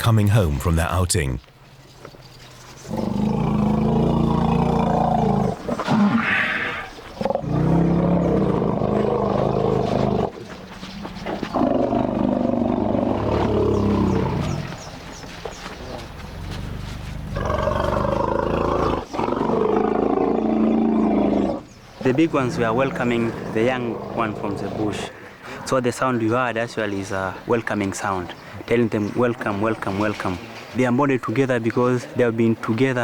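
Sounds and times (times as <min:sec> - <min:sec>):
elephants rumbling: 0:02.8 - 0:25.0.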